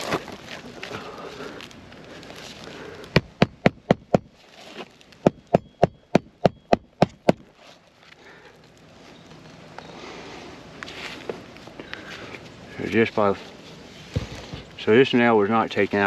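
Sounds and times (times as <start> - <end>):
hammer striking nails: 3.2 - 4.3, 5.3 - 7.4.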